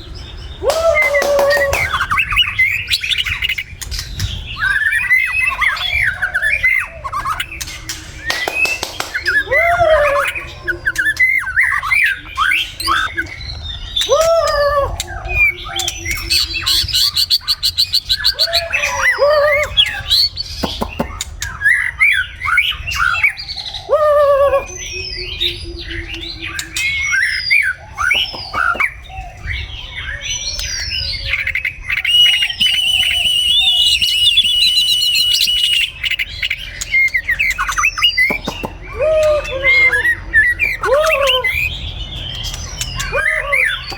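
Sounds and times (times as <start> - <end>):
bird singing whistled phrases: 14.0 - 43.9.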